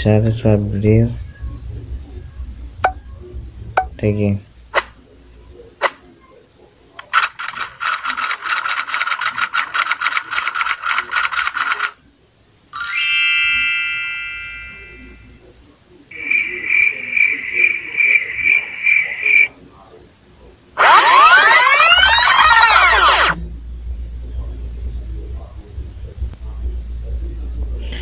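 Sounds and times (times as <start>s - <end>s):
ringing chime: 12.8s - 15.4s
pulsing beeping tone: 16.1s - 19.5s, 20.8s - 23.4s
rapid pulsing trill: 20.8s - 27.8s.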